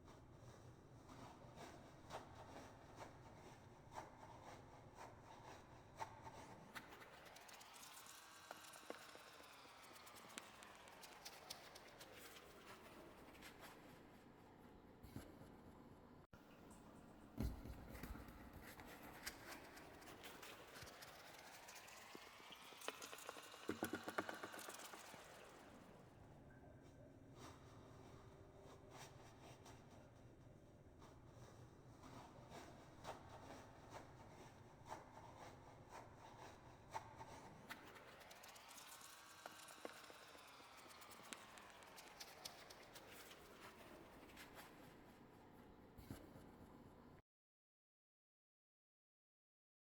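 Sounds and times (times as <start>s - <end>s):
light crackly ticks: 6.8s - 13.5s, 37.7s - 44.7s
hands rubbing foam toy: 22.8s - 25.4s
soft rubbing of foam toy: 27.3s - 47.2s.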